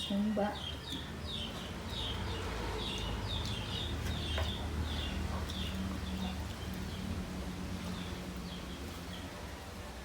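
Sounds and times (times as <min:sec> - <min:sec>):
bird chirping: 0:00.0 - 0:07.2.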